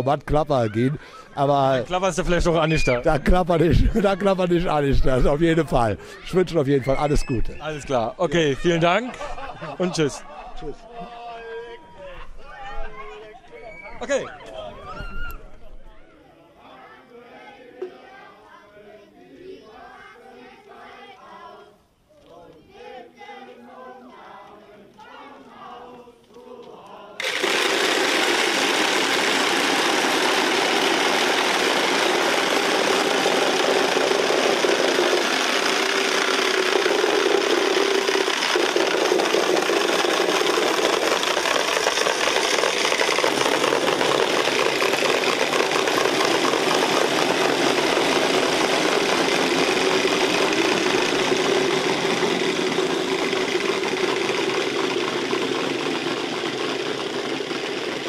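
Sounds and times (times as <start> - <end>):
faint singing: 16.1 - 27.2.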